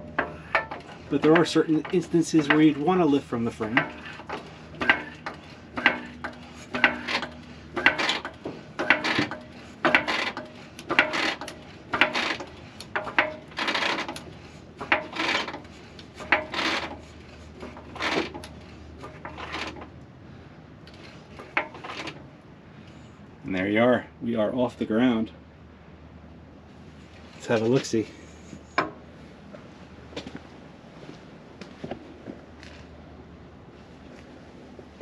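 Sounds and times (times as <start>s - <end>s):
floor jack creaking scrape: 0.0s - 19.9s, 20.9s - 22.2s.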